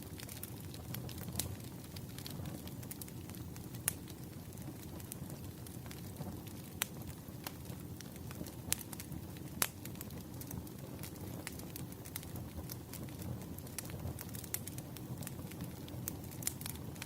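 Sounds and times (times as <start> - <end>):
campfire flame rumble: 0.0 - 17.0
fire crackles and pops: 0.0 - 17.0.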